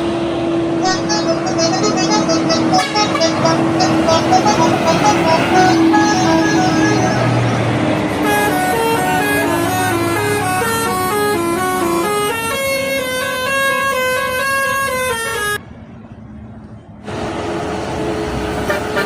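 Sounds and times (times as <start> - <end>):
bus air horn melody: 0.8 - 15.6, 18.6 - 19.0.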